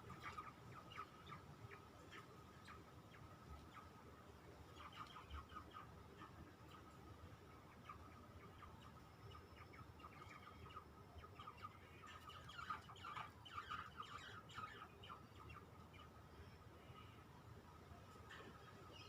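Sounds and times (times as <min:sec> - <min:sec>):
nestlings chirping: 0:04.6 - 0:17.3.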